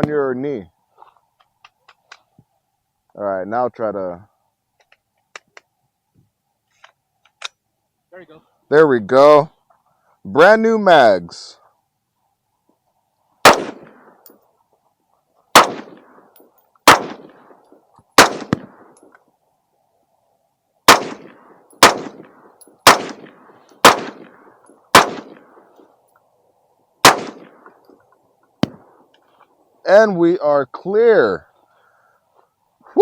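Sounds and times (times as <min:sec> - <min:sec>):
rifle gunshots: 0:13.4 - 0:14.2, 0:15.5 - 0:16.2, 0:16.8 - 0:17.6, 0:18.2 - 0:18.9, 0:20.9 - 0:25.6, 0:27.0 - 0:27.7.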